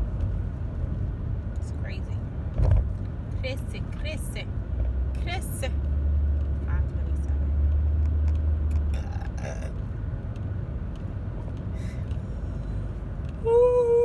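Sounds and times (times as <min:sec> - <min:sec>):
car road and engine rumble: 0:00.0 - 0:14.0
person belching: 0:08.9 - 0:09.8.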